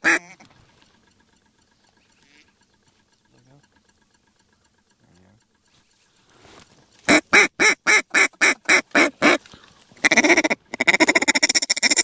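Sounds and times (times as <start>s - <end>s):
duck call quacks: 0.0s - 0.4s, 2.2s - 2.6s, 7.1s - 9.4s, 10.0s - 12.0s
duck call rapid chatter: 0.0s - 0.4s, 2.0s - 2.6s, 7.1s - 9.4s, 10.0s - 12.0s.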